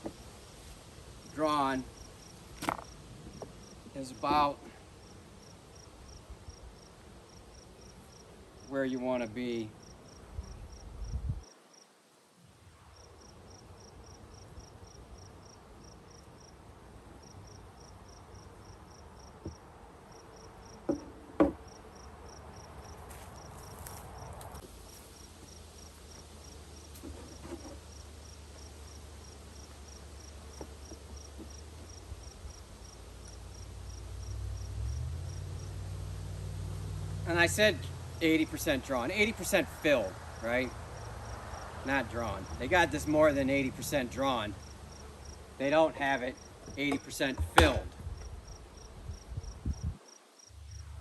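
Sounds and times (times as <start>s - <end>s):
insect chirping: 1.2s - 4.3s, 5.0s - 8.7s, 9.8s - 12.0s, 12.9s - 16.6s, 17.2s - 45.6s, 46.3s - 47.1s, 48.1s - 51.0s
sharp knocks: 46.9s - 47.9s.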